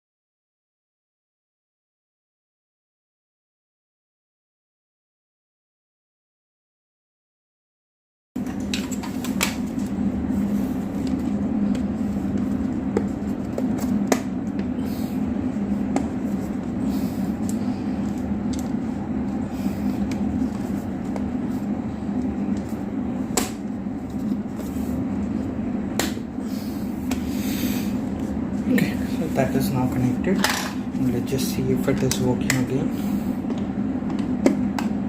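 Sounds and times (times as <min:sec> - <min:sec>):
steady low hum: 0:08.4 - 0:35.0.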